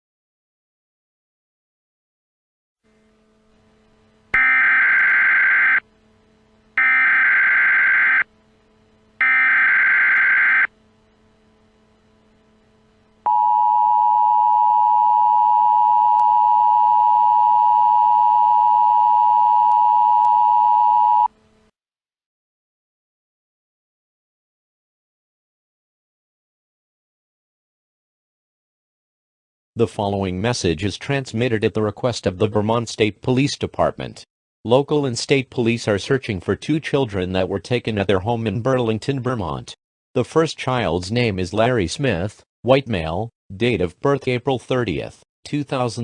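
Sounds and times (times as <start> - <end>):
data burst tones: 4.4 - 5.8, 6.8 - 8.3, 9.2 - 10.7
two-tone attention signal: 4.4 - 5.8, 6.8 - 8.3.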